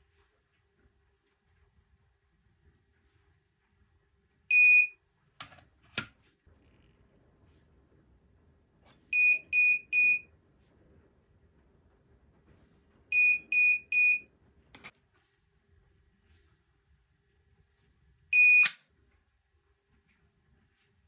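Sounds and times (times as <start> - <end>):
short buzzer beeps: 18.4 - 18.8
sharp click: 18.6 - 18.8.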